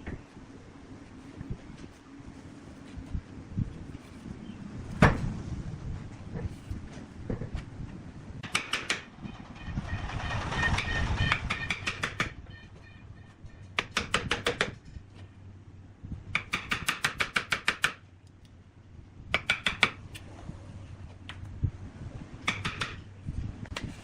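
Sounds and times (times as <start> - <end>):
low machine hum: 0.0 - 16.4
rapid metallic knocking strikes: 8.4 - 12.8.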